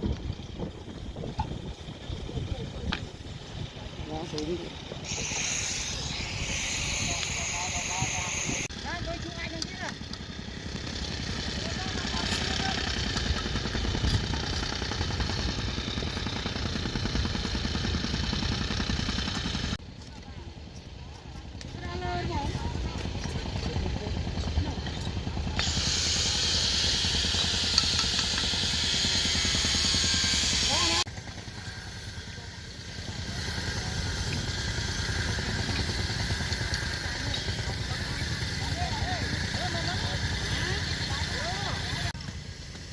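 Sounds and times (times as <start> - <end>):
fast continuous rattle: 0.0 - 19.8, 26.9 - 42.8
construction machine engine running: 0.2 - 19.8, 22.8 - 42.8.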